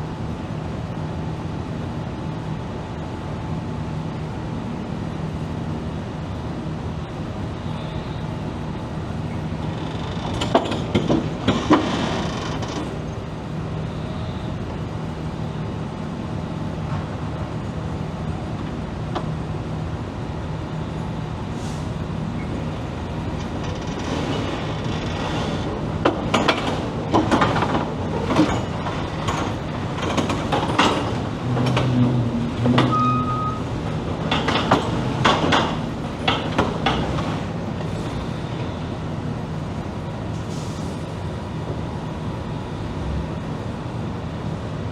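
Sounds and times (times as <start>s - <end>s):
metal knocks and clanks: 10.1s - 13.4s, 23.4s - 38.3s
heavy equipment engine droning: 21.6s - 41.2s.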